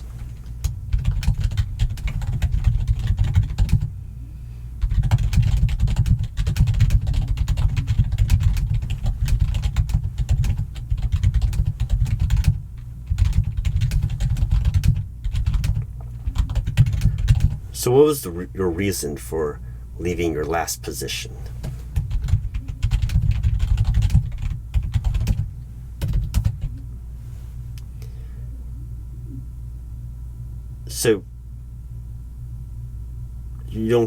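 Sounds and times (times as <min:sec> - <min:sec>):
typing on computer keyboard: 0:00.6 - 0:03.9, 0:04.8 - 0:17.6, 0:22.0 - 0:26.7.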